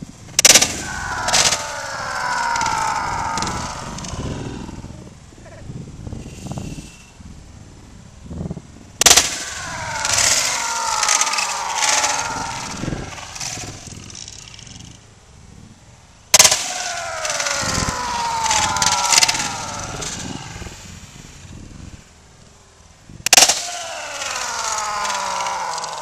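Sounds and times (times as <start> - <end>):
sledgehammer cracking plastic: 23.3 - 26.0.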